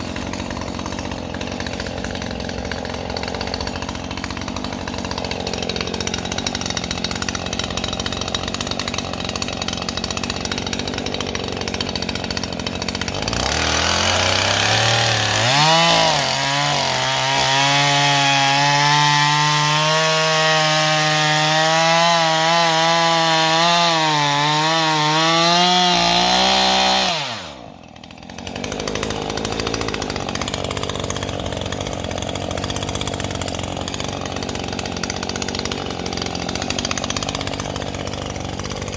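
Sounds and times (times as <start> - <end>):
chainsaw revving and idling: 0.0 - 38.9.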